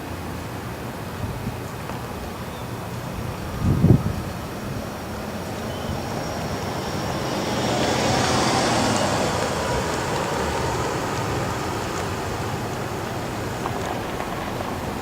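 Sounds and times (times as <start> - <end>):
car passing by: 3.3 - 15.0.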